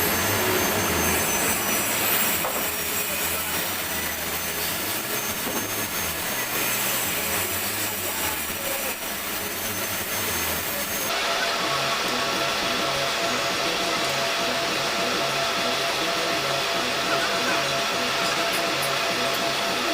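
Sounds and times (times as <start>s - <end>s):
machine running with high whine: 0.0s - 19.9s.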